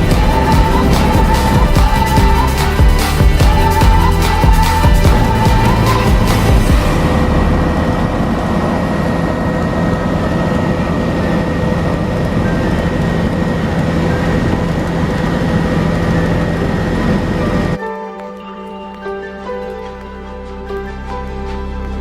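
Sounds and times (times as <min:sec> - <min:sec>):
constant whining tones: 0:00.0 - 0:18.1
helicopter rotor and turbine noise: 0:05.2 - 0:17.8.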